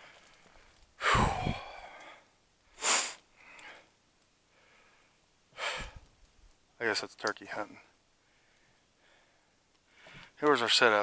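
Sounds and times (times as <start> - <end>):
person sighing: 1.0 - 2.1.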